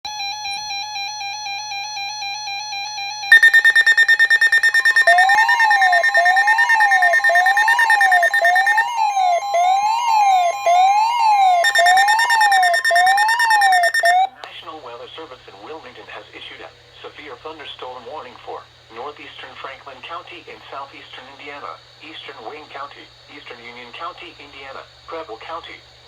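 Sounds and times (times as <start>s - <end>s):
rapidly pulsing high beep: 3.3s - 14.3s
wavering electronic tone: 3.3s - 14.3s.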